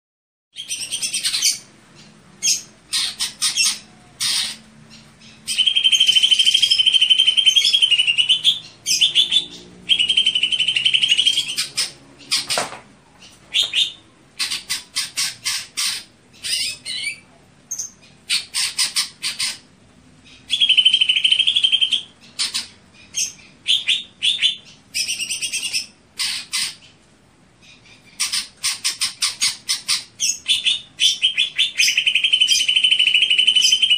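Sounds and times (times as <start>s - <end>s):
bird singing stuttering notes: 0.6s - 12.5s, 17.8s - 27.0s, 27.7s - 33.9s
bird trilling: 0.6s - 19.7s, 20.3s - 27.0s, 27.7s - 33.9s.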